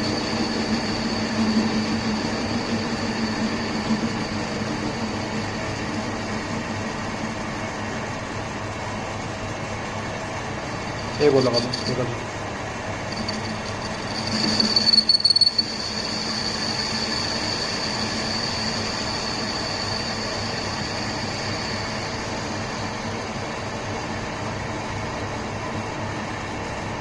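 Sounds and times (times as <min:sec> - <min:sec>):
high-pitched whine: 0:00.0 - 0:07.4, 0:10.7 - 0:23.8
lathe machine hum: 0:00.0 - 0:26.9.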